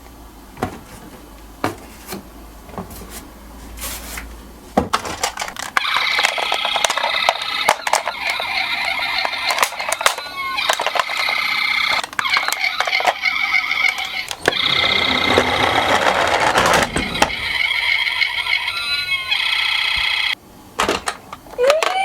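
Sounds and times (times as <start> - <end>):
toy cars clicking and knocking: 4.9 - 17.6, 20.8 - 22.0
toy ambulance siren: 5.8 - 20.4.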